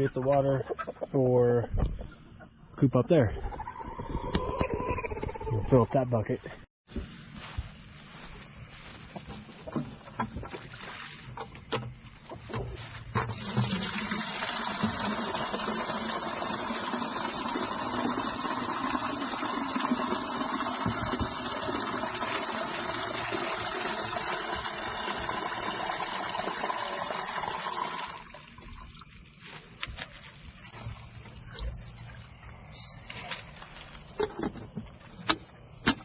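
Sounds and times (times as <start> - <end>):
water gushing into a bucket: 13.3 - 29.2.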